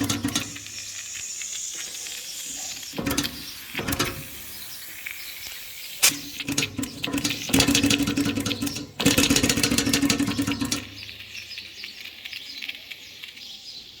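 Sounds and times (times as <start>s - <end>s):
hiss of steam: 0.0s - 7.9s
steam engine clattering: 0.0s - 12.1s
scattered ticks: 0.0s - 14.0s.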